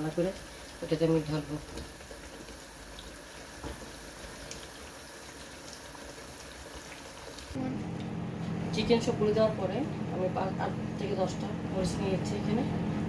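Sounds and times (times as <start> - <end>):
sauce bubbling in a pot: 0.0 - 8.3.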